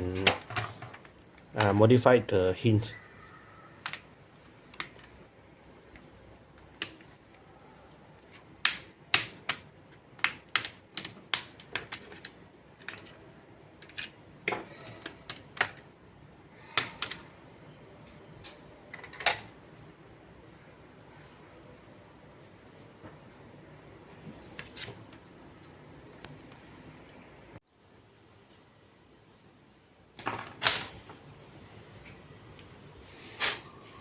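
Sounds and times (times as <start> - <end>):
laptop parts clicking and tapping: 3.8 - 4.1, 4.7 - 5.2, 8.3 - 13.2, 13.8 - 15.9, 16.7 - 17.4.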